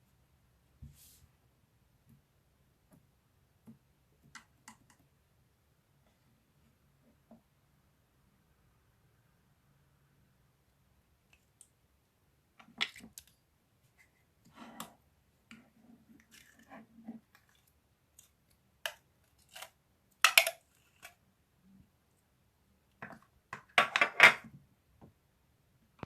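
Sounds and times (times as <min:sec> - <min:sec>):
small objects clicking and knocking: 0:17.3 - 0:21.2.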